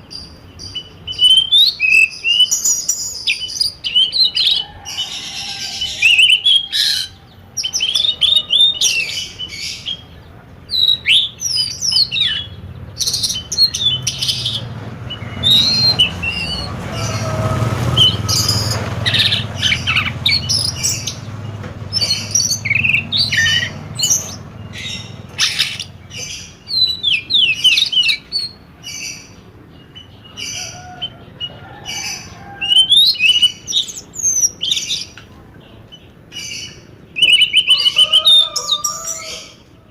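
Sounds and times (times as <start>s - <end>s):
small birds chirping and trilling: 0.0s - 39.9s.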